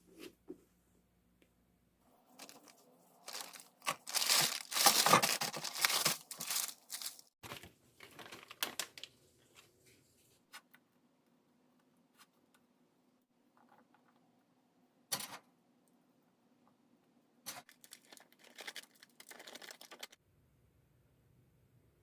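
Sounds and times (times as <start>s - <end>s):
packaging torn and crinkled: 2.4s - 7.4s, 17.7s - 20.2s.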